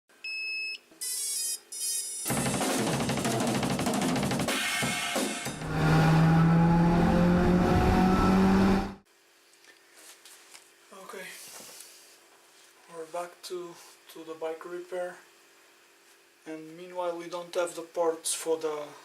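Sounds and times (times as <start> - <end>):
drums and cymbals: 2.3 - 5.6.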